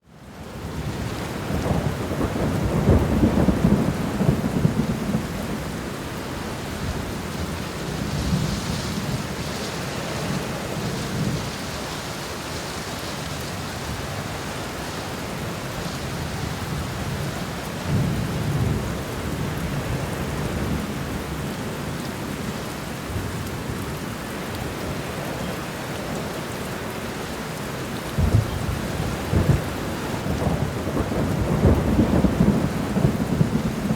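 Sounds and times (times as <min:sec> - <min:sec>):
heavy rain: 0:00.0 - 0:33.9
thunder rumbling and cracking: 0:00.7 - 0:11.7, 0:16.1 - 0:21.2, 0:28.1 - 0:33.9.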